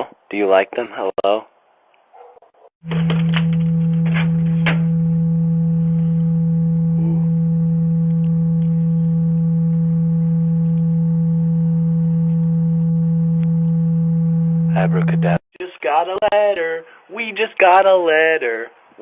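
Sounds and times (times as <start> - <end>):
low steady hum: 2.9 - 15.4.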